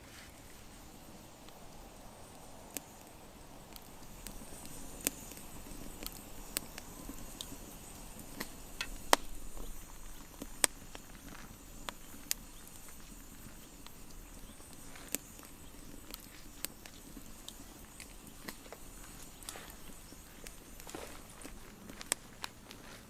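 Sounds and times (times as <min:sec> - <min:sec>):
faint steady hiss: 0:00.0 - 0:23.0
sharp clicks and light knocks: 0:08.2 - 0:23.0.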